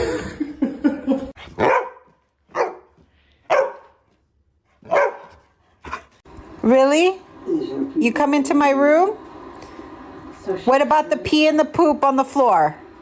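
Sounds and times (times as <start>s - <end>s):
dog barking: 1.6s - 4.0s, 4.8s - 6.0s.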